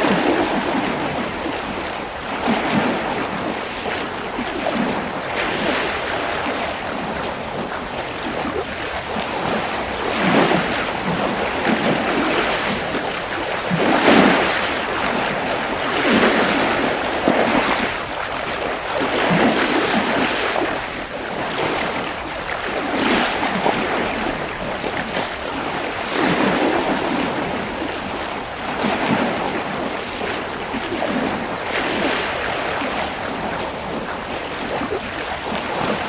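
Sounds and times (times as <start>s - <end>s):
water washing and splashing: 0.0s - 36.0s.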